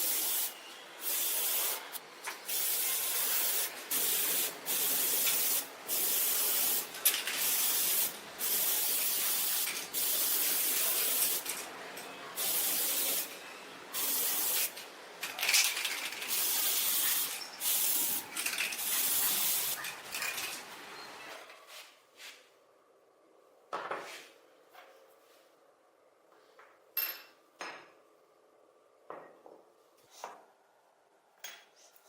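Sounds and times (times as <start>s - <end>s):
spray hissing: 0.0s - 11.4s, 12.4s - 13.3s, 14.0s - 14.8s, 16.3s - 19.8s.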